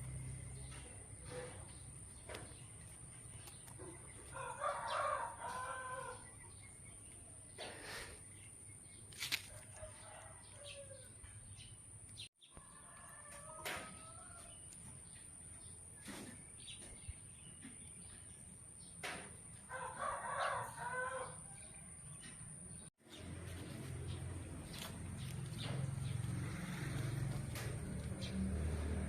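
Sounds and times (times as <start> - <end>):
rooster crowing: 4.3 - 6.3, 9.6 - 11.2, 12.5 - 14.6, 19.7 - 21.7.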